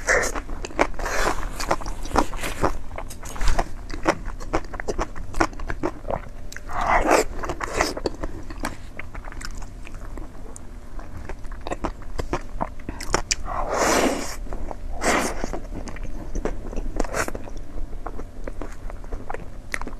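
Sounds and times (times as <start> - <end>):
crunching food: 0.0 - 19.9
person chewing food: 0.0 - 19.9.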